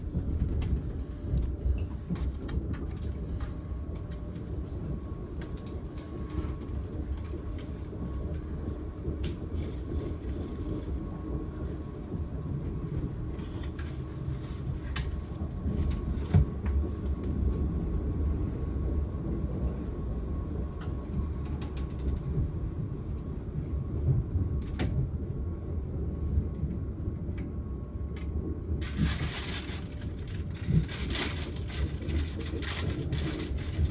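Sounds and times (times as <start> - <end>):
wheels clicking on rails: 0.0 - 17.8, 28.1 - 33.9
train rumble: 0.0 - 33.9.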